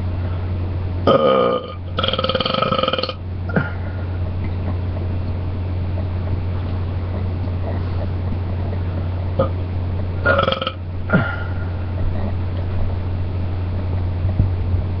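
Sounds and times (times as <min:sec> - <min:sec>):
steady low hum: 0:00.0 - 0:15.0
person belching: 0:01.1 - 0:03.8, 0:09.4 - 0:09.6, 0:10.2 - 0:11.5.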